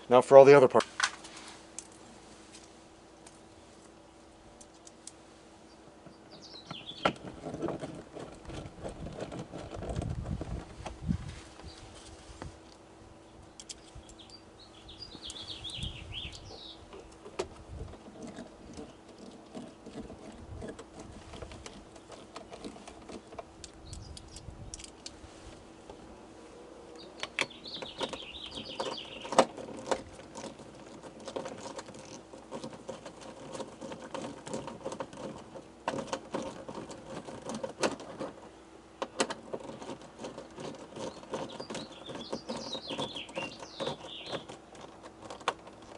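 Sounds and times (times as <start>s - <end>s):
bird chirping: 5.7s - 7.2s, 13.2s - 17.2s, 23.2s - 24.8s, 26.9s - 29.5s, 40.9s - 44.6s
tools and small parts clicking: 13.6s - 14.4s, 18.2s - 25.1s.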